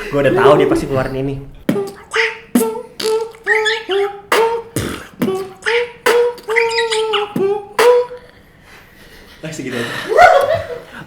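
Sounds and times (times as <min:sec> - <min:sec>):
beatboxing mouth cracks and hums: 0:01.6 - 0:08.4.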